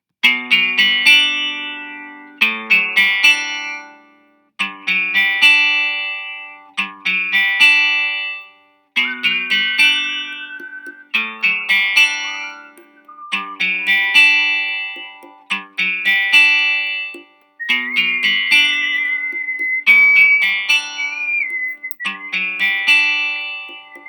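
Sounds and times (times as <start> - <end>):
plucked acoustic guitar loop: 0.2 - 24.0
high whistle line: 9.0 - 15.4, 17.6 - 24.0.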